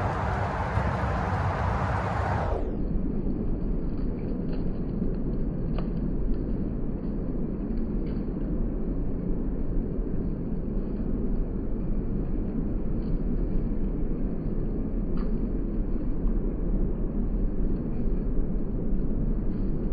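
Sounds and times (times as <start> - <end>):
strong wind on microphone: 0.0 - 4.3.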